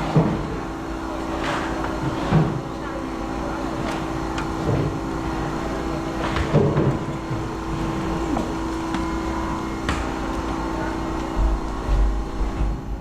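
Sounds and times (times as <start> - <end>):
engine humming steadily: 4.3 - 12.2.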